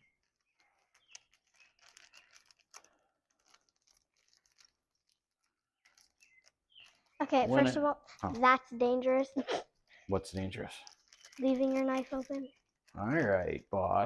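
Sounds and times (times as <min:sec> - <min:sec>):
small clicks: 0:00.0 - 0:07.2
faint scratching: 0:00.0 - 0:14.0.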